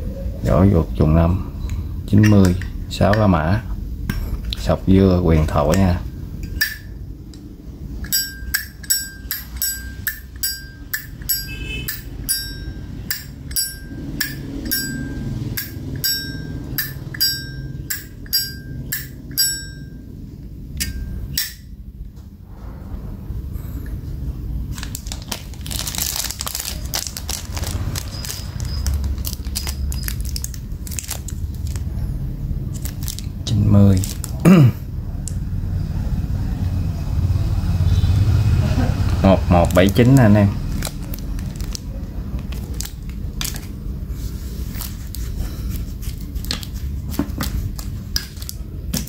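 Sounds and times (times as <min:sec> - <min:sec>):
rustling handling noise: 0:24.6 - 0:34.4, 0:39.5 - 0:49.0.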